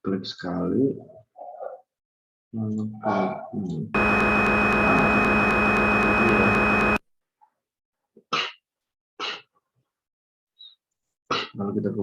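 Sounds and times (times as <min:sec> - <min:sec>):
machine hum with high whine: 0:04.0 - 0:07.0.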